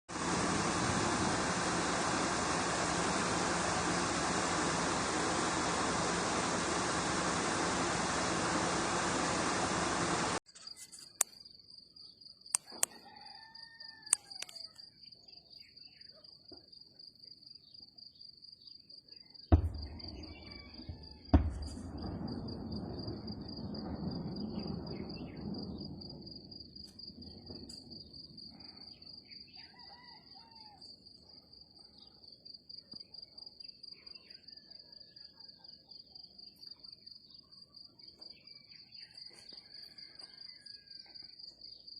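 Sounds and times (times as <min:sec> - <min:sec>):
loud even noise: 0:00.1 - 0:10.4, 0:19.5 - 0:25.1
crickets chirring: 0:16.7 - 0:29.7
low rumbling: 0:19.5 - 0:25.8
gunfire bangs: 0:19.6 - 0:22.8.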